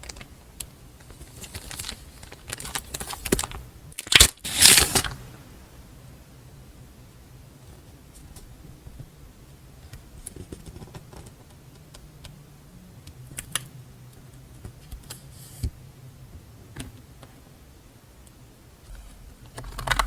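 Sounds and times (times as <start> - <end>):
faint low hum: 0.0 - 20.0
paper rustle: 1.0 - 5.2.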